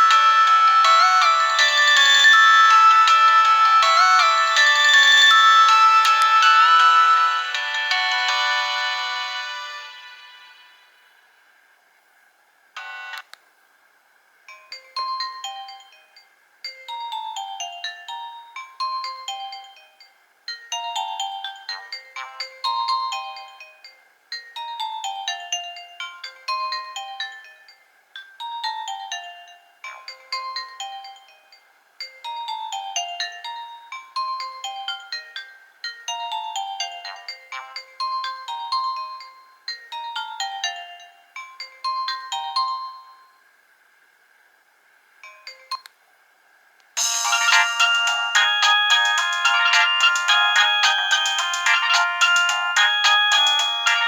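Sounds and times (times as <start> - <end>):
mobile phone ringtone: 0.0 - 10.9, 12.8 - 13.2, 20.8 - 24.0, 32.1 - 41.6, 47.0 - 54.0.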